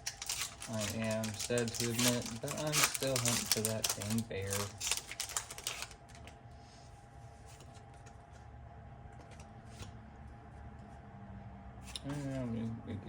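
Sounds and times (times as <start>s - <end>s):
card packs rustling and clicking: 0.0s - 6.4s
faint steady hum: 0.0s - 13.0s.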